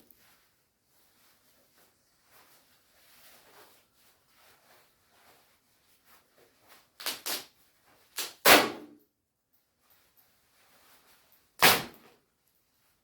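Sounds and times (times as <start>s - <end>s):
nylon fabric ripping: 7.0s - 8.9s, 11.6s - 12.1s.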